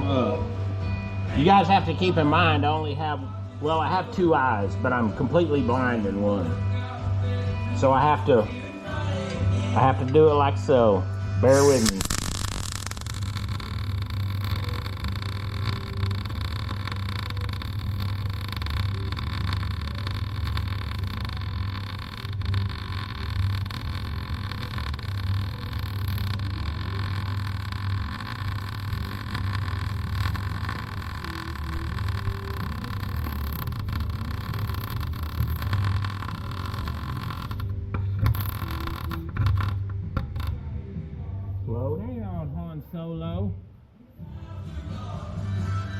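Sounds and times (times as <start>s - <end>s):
welder arc crackling buzz: 11.4s - 40.6s.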